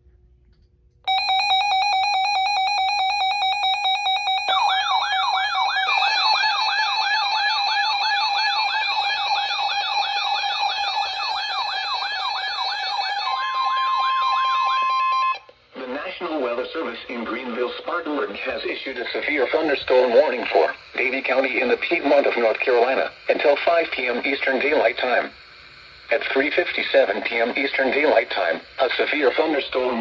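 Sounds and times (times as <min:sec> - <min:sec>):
rapid beeping alarms: 0:01.1 - 0:15.5
warbling siren alarms: 0:01.1 - 0:15.5
steady warning alarm tone: 0:01.1 - 0:30.0.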